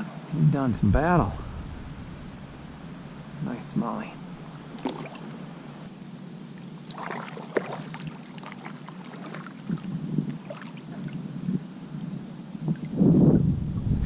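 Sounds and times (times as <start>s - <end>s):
light water splashing: 1.5s - 5.9s, 6.8s - 11.2s.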